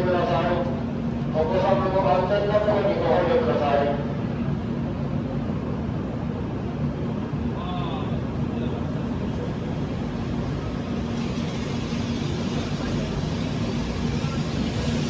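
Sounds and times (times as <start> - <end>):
train humming pulling away: 8.3 - 15.0.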